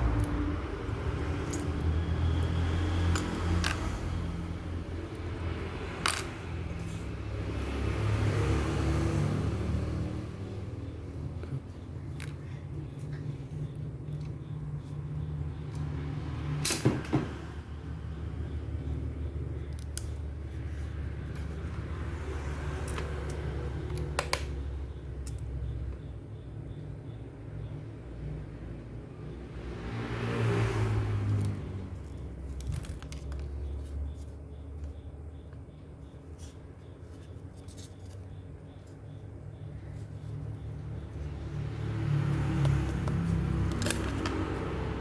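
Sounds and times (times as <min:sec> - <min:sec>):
clicks of small parts and tools: 0:03.1 - 0:04.1, 0:16.6 - 0:17.1, 0:25.2 - 0:25.5, 0:42.6 - 0:44.7.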